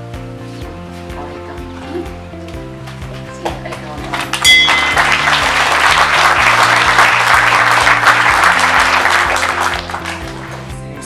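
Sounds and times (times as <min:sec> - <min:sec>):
soft background music: 0:00.0 - 0:11.0
audience applauding: 0:03.0 - 0:10.9.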